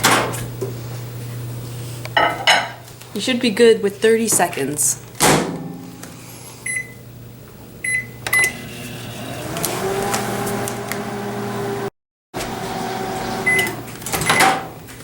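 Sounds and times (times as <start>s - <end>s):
microwave oven humming: 4.8s - 15.0s
microwave keypad beeping: 6.7s - 7.0s, 7.8s - 8.6s, 13.4s - 14.5s.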